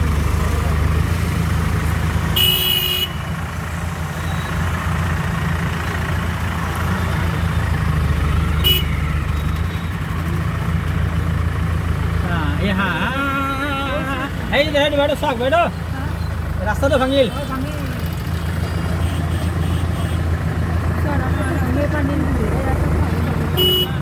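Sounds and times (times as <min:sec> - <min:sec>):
vehicle engine running: 0:00.0 - 0:24.0
car horn honking: 0:02.3 - 0:03.4, 0:08.3 - 0:09.4, 0:18.8 - 0:20.3, 0:23.5 - 0:24.0.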